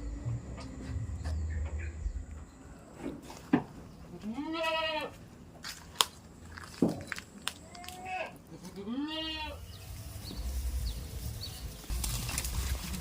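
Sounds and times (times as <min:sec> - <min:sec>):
goat bleating: 0:04.1 - 0:05.2, 0:07.6 - 0:09.6.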